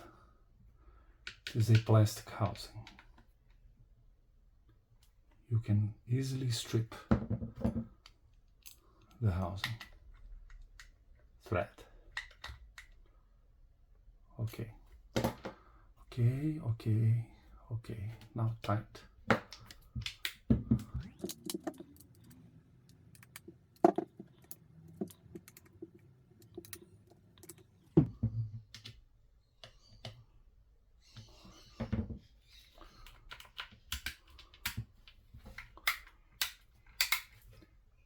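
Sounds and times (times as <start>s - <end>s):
plastic and metal parts clicking: 7.7s - 11.0s, 12.1s - 13.1s, 19.3s - 27.8s, 32.7s - 37.7s.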